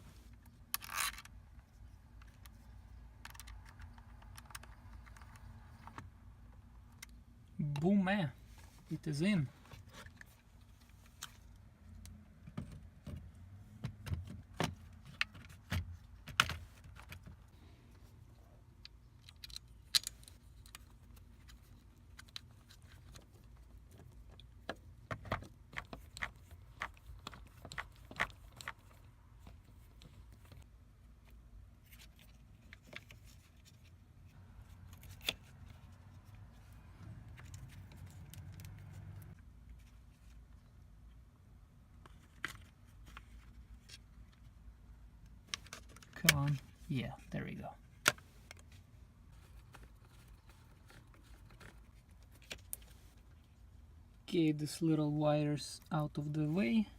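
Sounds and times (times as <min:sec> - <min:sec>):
clicks and knocks of plastic parts: 0:02.1 - 0:06.1, 0:18.8 - 0:30.6.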